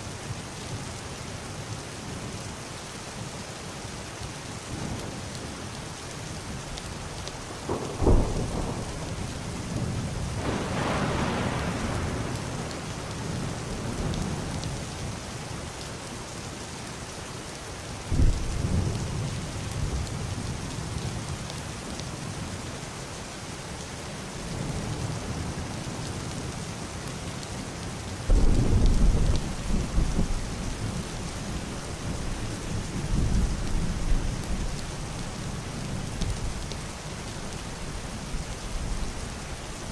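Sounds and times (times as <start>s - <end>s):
heavy rain on a wooden roof: 0.0s - 39.9s
muffled thunder rumbling: 7.6s - 14.6s, 18.1s - 20.4s, 28.2s - 36.8s.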